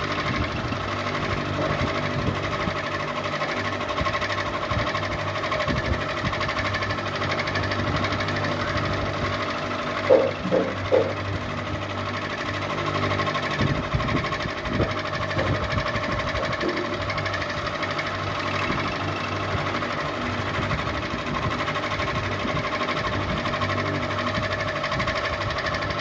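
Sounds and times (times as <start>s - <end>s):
ceiling fan rattling and humming: 0.0s - 26.0s
sharp knocks: 10.1s - 11.2s.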